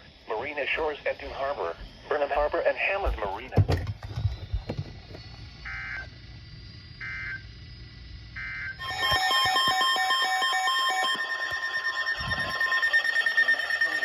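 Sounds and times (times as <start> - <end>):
digital data bursts: 8.4 - 14.0
beeping electronic alert: 8.8 - 14.0.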